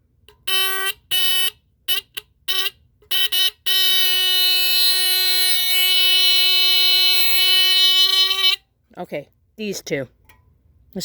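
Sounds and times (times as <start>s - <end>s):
fire alarm horn buzzing: 0.3s - 8.7s.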